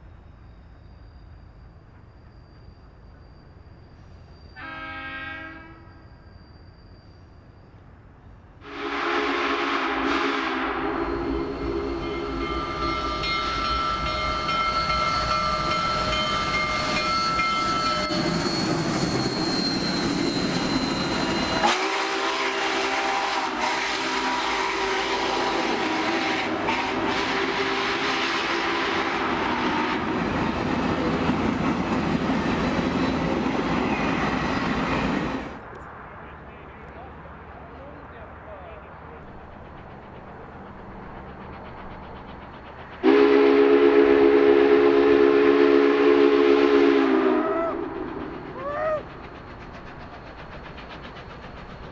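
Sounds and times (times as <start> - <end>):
train rumble and rail clatter: 0.0 - 51.9
high squealing tones: 10.8 - 21.8.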